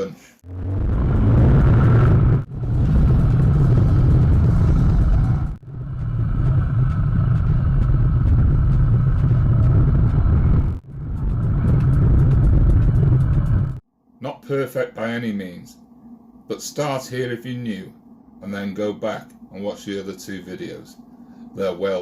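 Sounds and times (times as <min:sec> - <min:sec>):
low wind rumble on microphone: 0:00.4 - 0:13.8
motorbike engine running: 0:00.8 - 0:13.8.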